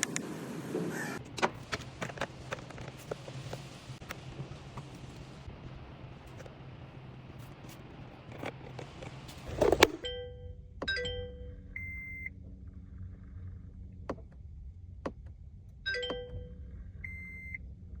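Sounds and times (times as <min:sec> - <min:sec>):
car warning chimes: 0:10.0 - 0:12.3, 0:15.9 - 0:17.6
short steady beep: 0:11.8 - 0:12.3, 0:15.9 - 0:17.6.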